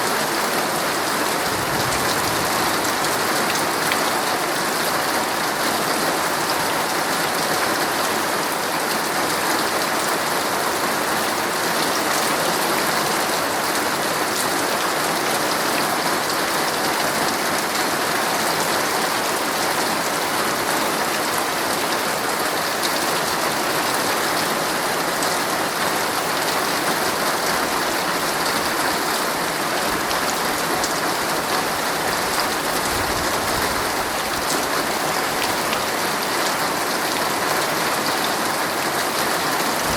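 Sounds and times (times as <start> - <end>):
heavy rain drumming on a tent: 0.0 - 39.9.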